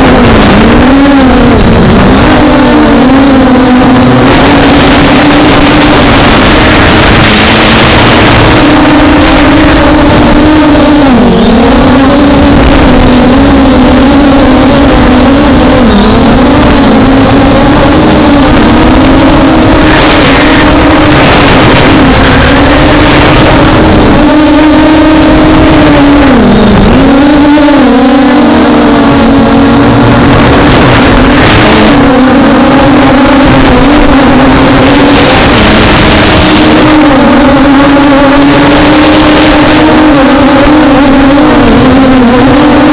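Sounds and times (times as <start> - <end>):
quadcopter motors whining: 0.0 - 42.9
wind rumble on microphone: 0.0 - 42.9.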